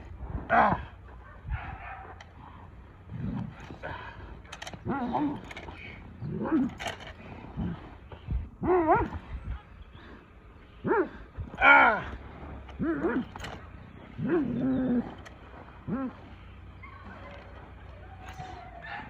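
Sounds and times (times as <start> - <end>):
dog barking deeply: 0.5 - 2.6, 8.6 - 9.2, 10.8 - 12.2, 16.8 - 19.0.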